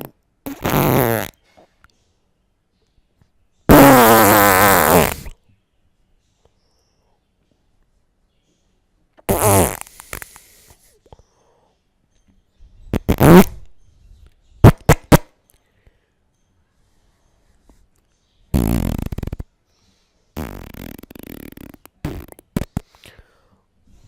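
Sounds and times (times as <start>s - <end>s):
fart sound effects: 0.0s - 1.4s, 3.7s - 5.4s, 9.2s - 10.2s, 12.9s - 13.6s, 14.6s - 15.3s, 18.5s - 19.5s, 20.4s - 22.8s.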